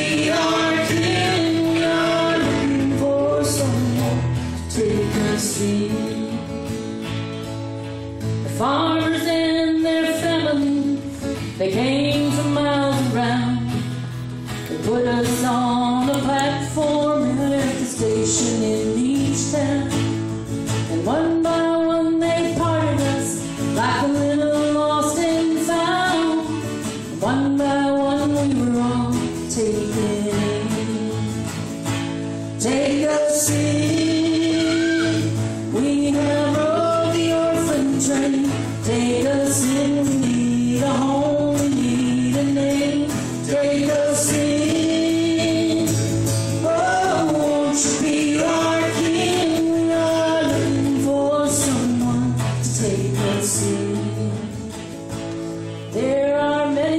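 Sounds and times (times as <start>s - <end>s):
people singing: 0.0s - 6.4s, 27.2s - 31.7s, 32.6s - 54.9s
acoustic folk band playing: 0.0s - 56.9s.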